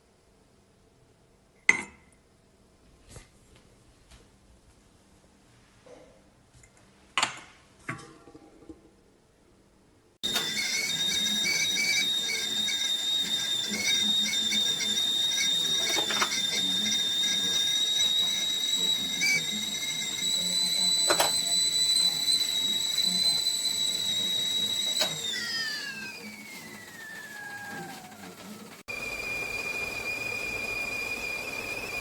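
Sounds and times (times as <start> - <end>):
kettle whistling: 10.2 - 32.0.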